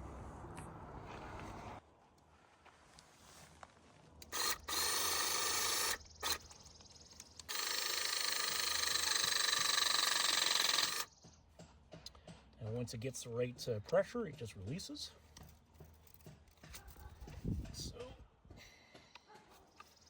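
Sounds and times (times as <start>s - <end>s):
electric hydraulic crimper running: 4.2s - 6.6s, 7.4s - 11.1s.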